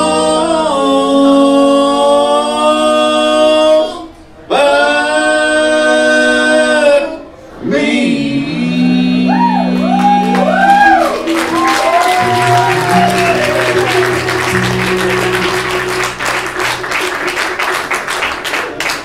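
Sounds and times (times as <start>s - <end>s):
sliding lead guitar notes: 9.2s - 18.3s
live band holding final chord: 9.5s - 19.0s
audience applause: 9.8s - 19.0s.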